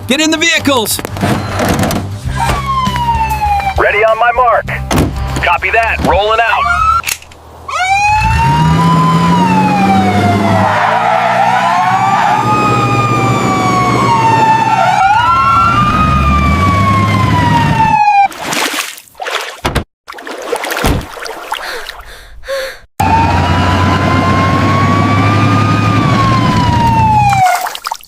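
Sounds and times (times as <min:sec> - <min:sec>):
emergency siren wailing: 0:02.3 - 0:04.6, 0:06.4 - 0:07.0, 0:07.7 - 0:18.3, 0:23.0 - 0:27.6.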